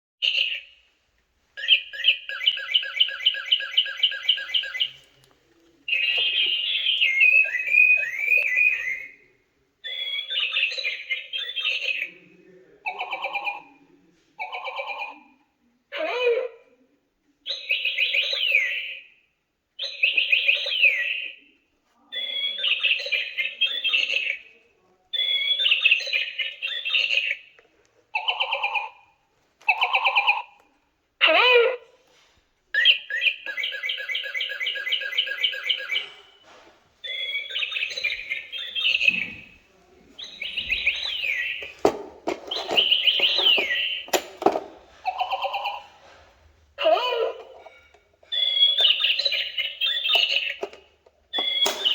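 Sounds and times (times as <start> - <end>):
electronic toy chirping tones: 1.6 - 5.0, 42.4 - 44.3, 46.9 - 50.7, 51.4 - 51.9
knocks: 40.6 - 44.8.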